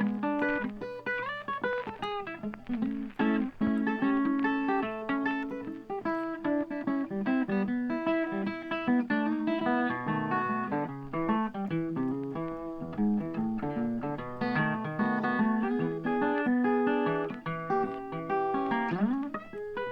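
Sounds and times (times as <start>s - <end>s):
plucked acoustic guitar: 0.0s - 19.9s.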